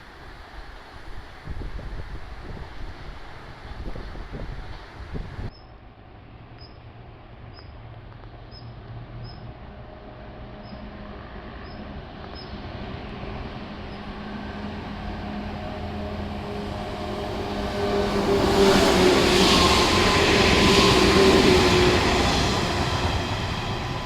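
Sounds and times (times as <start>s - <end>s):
rail noise: 0.0s - 24.0s
electric train running hum: 8.9s - 24.0s.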